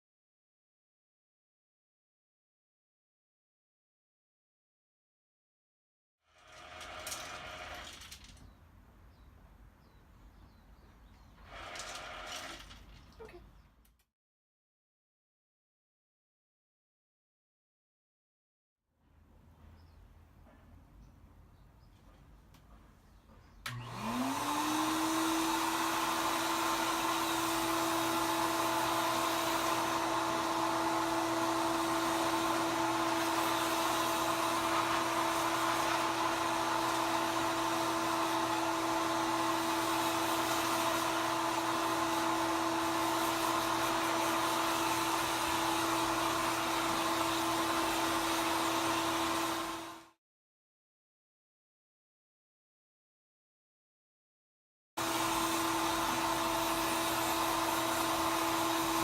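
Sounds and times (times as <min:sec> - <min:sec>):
hair dryer running: 0:23.7 - 0:50.2, 0:55.0 - 0:59.0.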